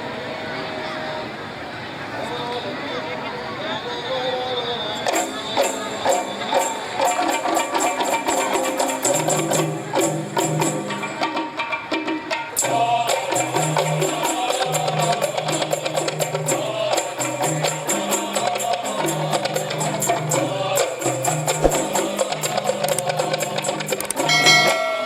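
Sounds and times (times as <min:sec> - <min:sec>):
tambourine jingles: 0:05.1 - 0:11.2, 0:12.6 - 0:25.0
frame drums beating: 0:05.1 - 0:24.8.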